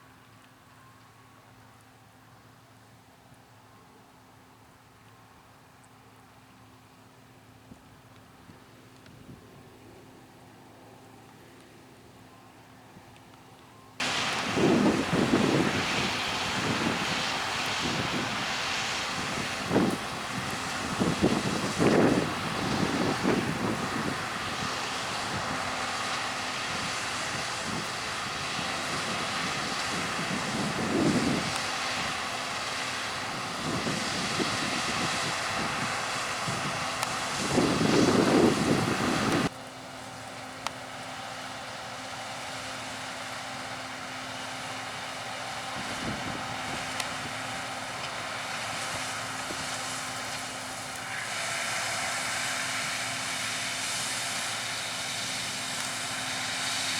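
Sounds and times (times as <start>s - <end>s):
harvest machinery engines running: 13.3s - 56.9s
wind buffeting microphone: 14.0s - 39.5s, 45.8s - 50.6s.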